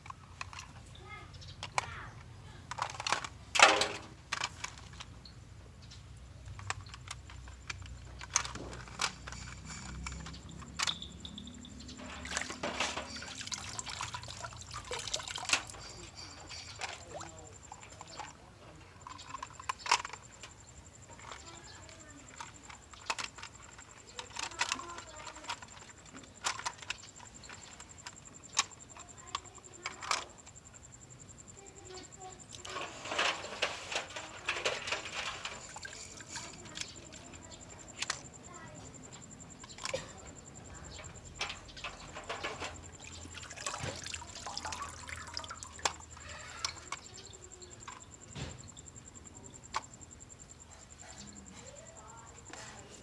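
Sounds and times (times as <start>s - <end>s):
toy cars clacking together: 0.0s - 50.4s.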